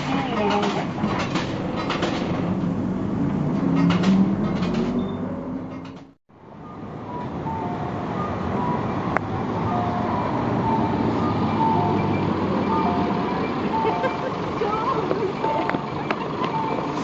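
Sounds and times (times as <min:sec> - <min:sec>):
engine and traffic noise: 0:00.0 - 0:17.0
two-note bus chime: 0:06.6 - 0:17.0.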